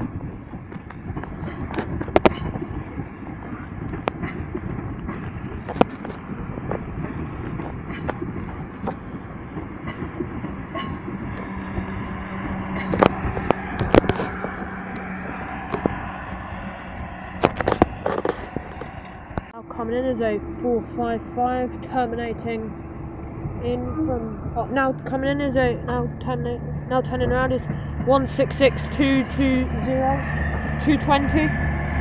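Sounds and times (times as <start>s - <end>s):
wheels clicking over rail joints: 0.0s - 19.6s
steady low hum: 0.0s - 32.0s
train rumble: 0.0s - 32.0s.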